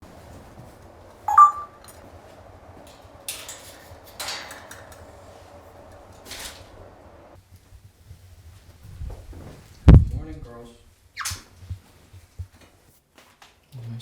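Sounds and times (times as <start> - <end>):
harsh rasping parrot calls: 1.3 - 1.7
parrot whistle: 1.3 - 1.8.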